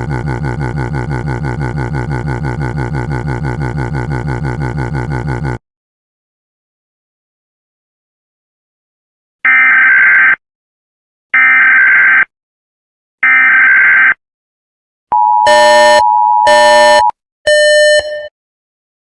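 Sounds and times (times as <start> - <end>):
harsh beeping tones: 15.2 - 18.3
two-tone attention signal: 15.2 - 18.3.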